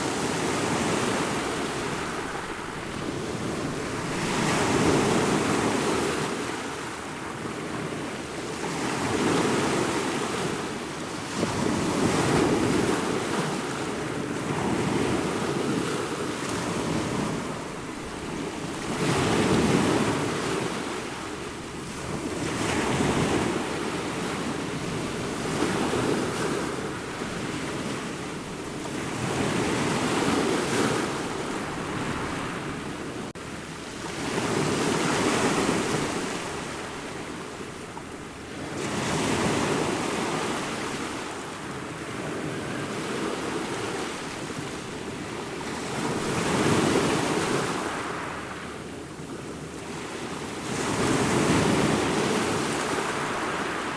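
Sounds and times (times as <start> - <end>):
ocean waves breaking: 0.0 - 53.9.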